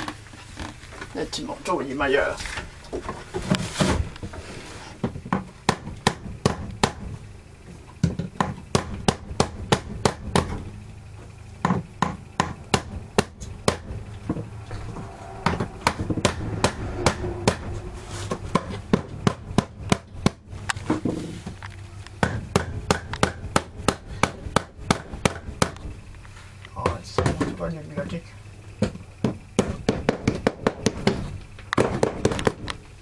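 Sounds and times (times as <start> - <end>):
hammer striking wood: 5.3 - 7.2, 8.0 - 10.6, 11.6 - 14.4, 15.4 - 17.7, 18.5 - 20.4, 22.2 - 25.9, 28.8 - 32.7.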